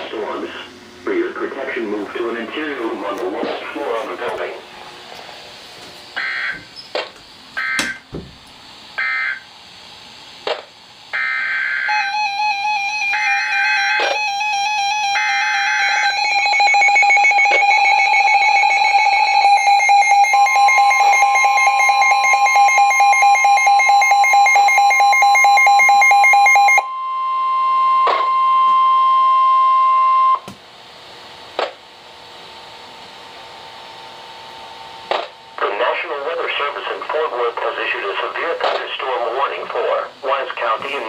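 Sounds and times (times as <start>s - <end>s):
radio static with clicks: 0.0s - 4.6s, 6.9s - 7.2s, 10.4s - 10.8s, 35.0s - 41.0s
warbling electronic alarm: 6.2s - 6.8s, 7.6s - 8.1s, 9.0s - 9.5s, 11.1s - 30.4s
single steady alarm tone: 9.0s - 9.5s, 11.2s - 30.5s.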